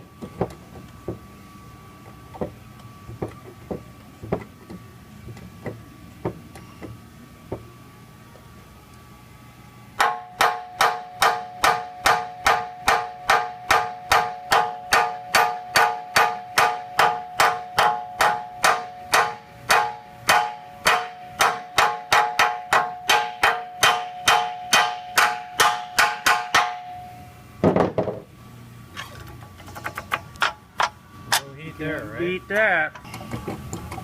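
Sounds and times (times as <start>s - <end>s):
hammer ringing on steel: 10.0s - 27.1s.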